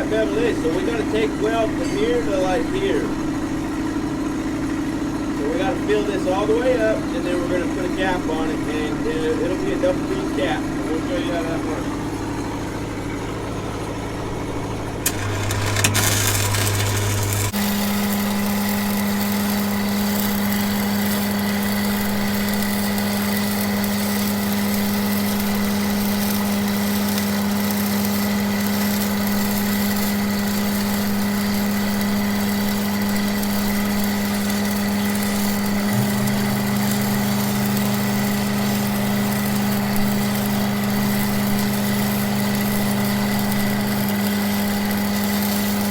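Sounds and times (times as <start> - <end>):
welding machine engine running: 0.0 - 45.9
crackling hiss of stick welding: 15.0 - 45.9.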